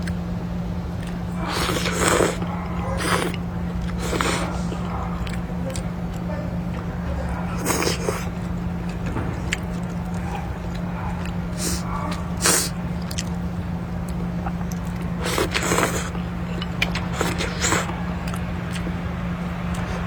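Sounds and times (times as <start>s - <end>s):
steady low hum: 0.0s - 20.0s
person slurping noodles: 1.4s - 2.4s, 3.0s - 4.9s, 7.6s - 8.3s, 12.4s - 13.2s, 15.2s - 17.9s.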